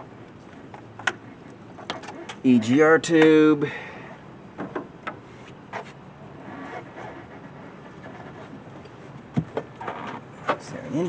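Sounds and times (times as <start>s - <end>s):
engine parts clicking and knocking: 0.1s - 2.4s.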